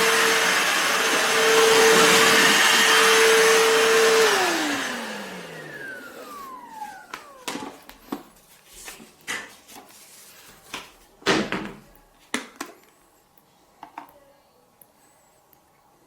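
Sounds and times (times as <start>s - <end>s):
vacuum motor winding down: 0.0s - 7.9s.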